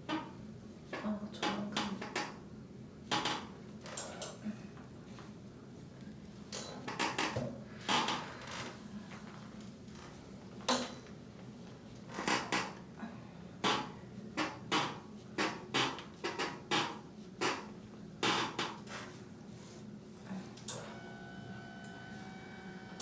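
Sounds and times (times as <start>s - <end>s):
faint steady hum: 19.2s - 23.0s.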